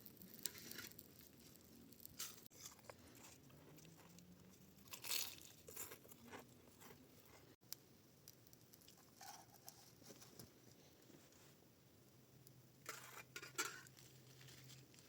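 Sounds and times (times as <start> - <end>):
faint crunching and rustling: 0.0 - 7.6, 8.4 - 11.6, 12.8 - 15.0.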